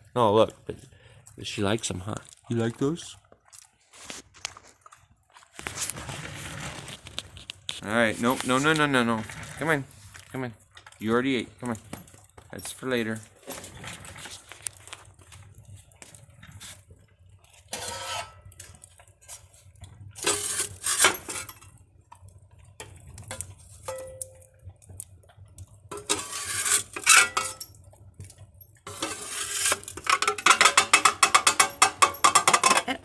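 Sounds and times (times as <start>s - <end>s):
dog eating from bowl: 0.2s - 17.7s, 18.3s - 33.0s
dish clattering and scraping: 11.7s - 15.0s, 17.7s - 19.5s, 20.2s - 21.7s, 22.8s - 24.4s, 25.9s - 27.8s, 28.8s - 33.0s.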